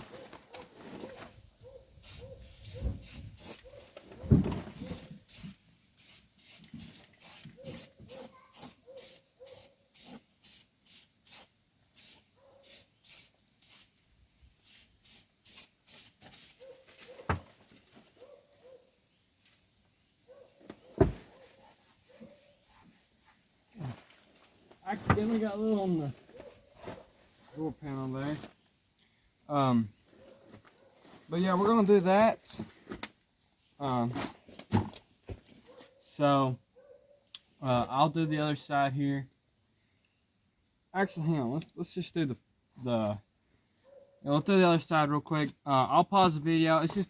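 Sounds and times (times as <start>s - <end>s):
aerosol can spraying: 2.0s - 3.6s, 4.8s - 13.9s, 14.6s - 16.6s.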